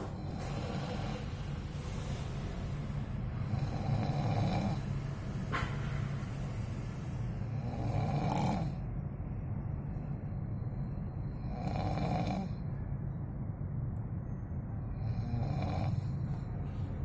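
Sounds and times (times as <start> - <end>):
steady low rumble: 0.0 - 7.8, 8.7 - 11.6.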